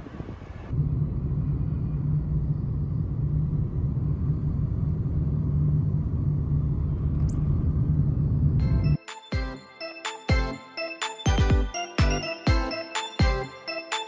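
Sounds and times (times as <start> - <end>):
moving vehicle low rumble: 0.0 - 9.0.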